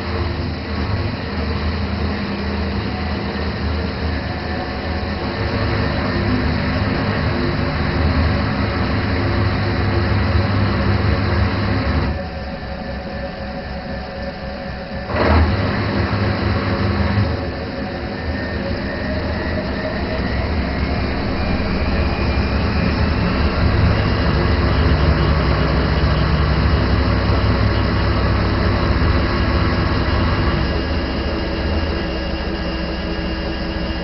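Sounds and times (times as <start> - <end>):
washing machine running: 0.0 - 34.0.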